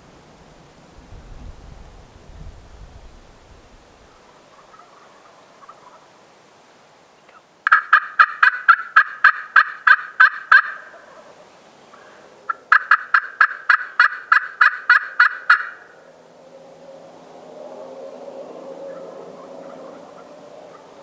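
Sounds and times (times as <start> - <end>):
turkey yelps: 4.2 - 6.1, 7.6 - 16.1.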